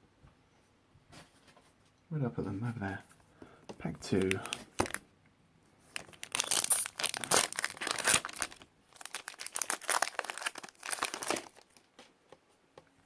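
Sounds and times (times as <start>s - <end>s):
foil wrapper crinkling and tearing: 4.0s - 5.0s, 5.9s - 11.9s.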